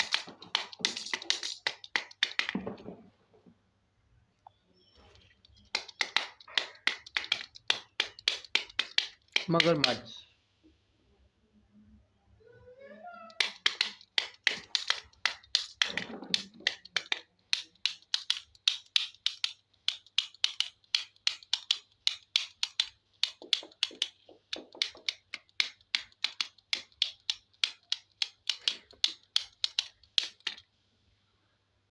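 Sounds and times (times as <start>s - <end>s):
sharp hard clicks: 5.6s - 10.0s, 13.4s - 30.6s.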